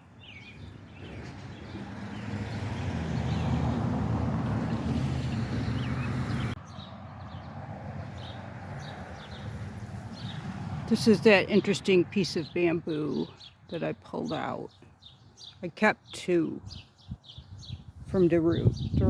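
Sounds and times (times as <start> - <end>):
vehicle engine: 0.0 - 12.5
birds chirping: 0.0 - 19.0.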